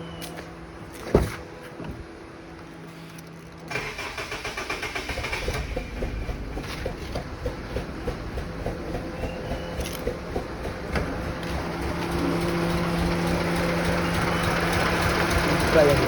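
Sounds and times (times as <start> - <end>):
car engine running rough: 3.2 - 16.0
starter motor cranking: 3.2 - 16.0.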